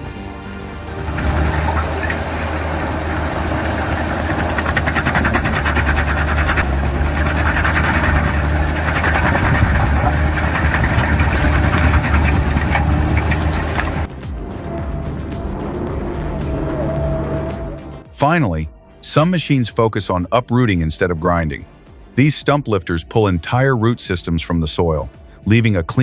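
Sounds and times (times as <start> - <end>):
music: 0.0 - 4.9, 13.2 - 26.0
heavy machine engine running: 0.6 - 14.1
fast even rattling: 0.8 - 14.1.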